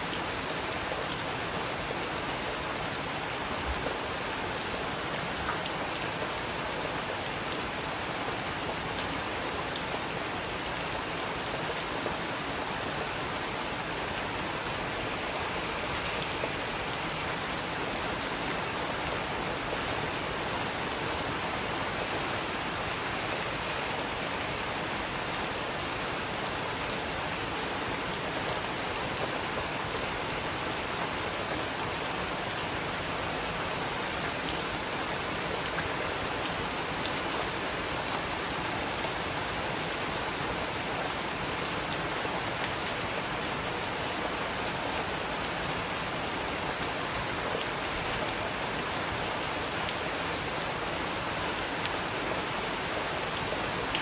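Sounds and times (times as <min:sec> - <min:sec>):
rain pattering: 0:00.0 - 0:54.0.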